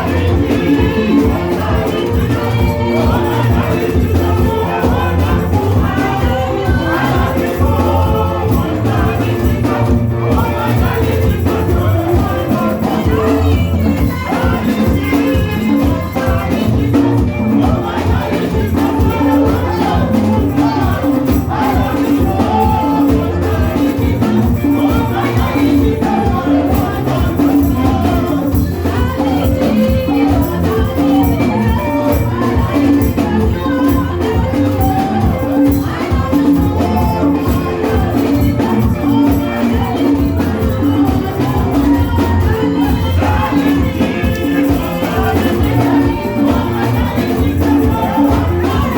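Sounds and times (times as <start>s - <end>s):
upbeat praise music: 0.0s - 48.9s.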